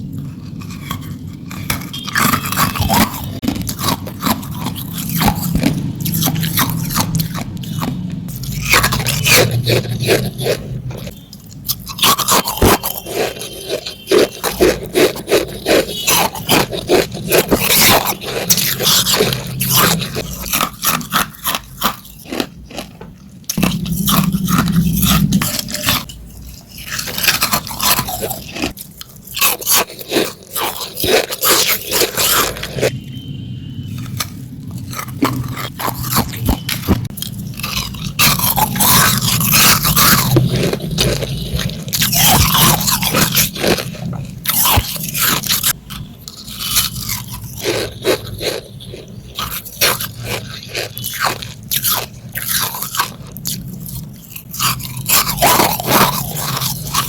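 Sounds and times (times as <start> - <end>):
ice crunching between teeth: 0.0 - 33.0, 34.0 - 57.0.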